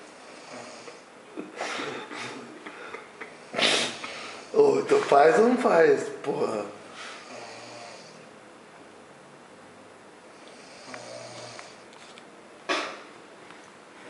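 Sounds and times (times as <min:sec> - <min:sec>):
man snoring: 0:00.2 - 0:01.0, 0:07.2 - 0:08.2, 0:10.5 - 0:11.8.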